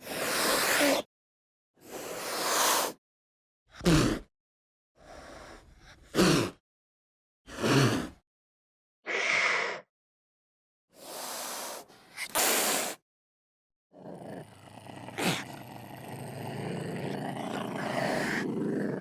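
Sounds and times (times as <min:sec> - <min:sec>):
dinosaur snorts and hisses: 0:00.0 - 0:01.1, 0:05.1 - 0:06.6, 0:11.0 - 0:13.0, 0:14.0 - 0:19.0
harsh dinosaur roar: 0:14.0 - 0:19.0.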